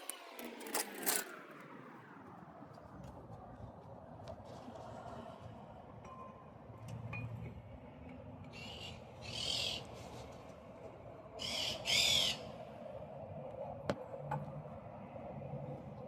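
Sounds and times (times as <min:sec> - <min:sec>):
power wrench whine: 0:00.0 - 0:01.6.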